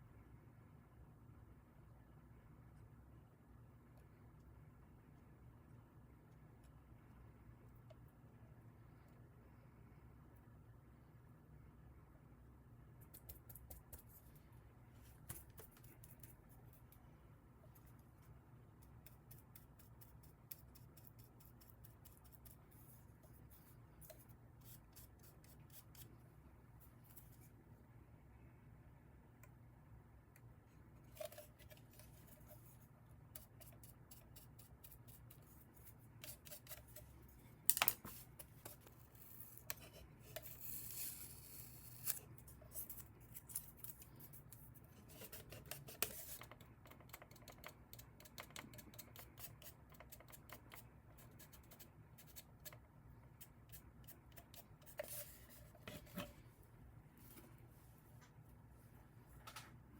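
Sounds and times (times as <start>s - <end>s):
scratchy hiss: 38.0s - 46.4s.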